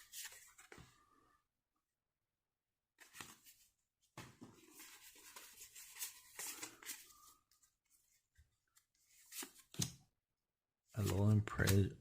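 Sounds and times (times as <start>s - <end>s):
trading cards rustling and sliding: 0.0s - 0.8s, 4.4s - 9.9s, 11.0s - 11.8s.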